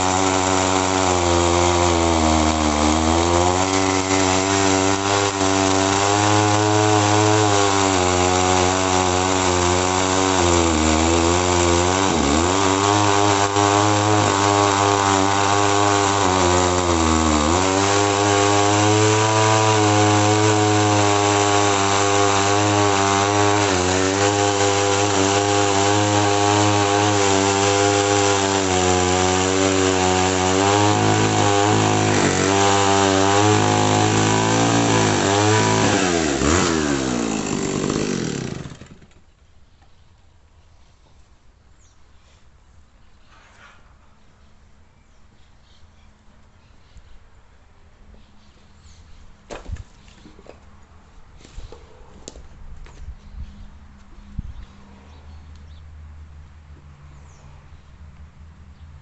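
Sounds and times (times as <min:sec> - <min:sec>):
chainsaw cutting logs: 0:00.0 - 0:39.3.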